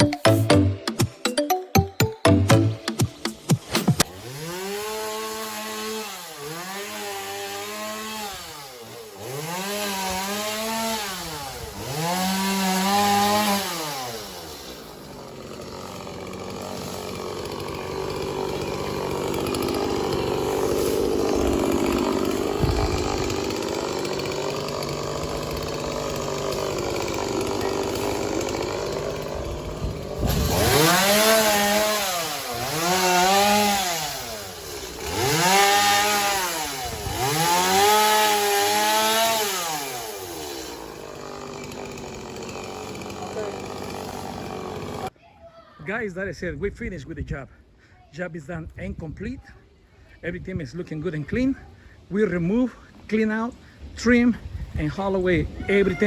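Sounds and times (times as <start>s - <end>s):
chainsaw cutting wood: 0.0s - 45.2s
chainsaw revving: 2.4s - 45.2s.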